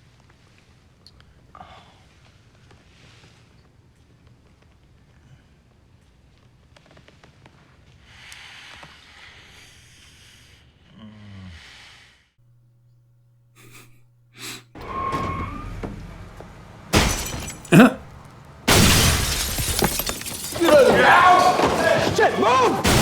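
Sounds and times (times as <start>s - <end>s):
explosion crashes: 16.9s - 18.1s, 18.7s - 23.0s.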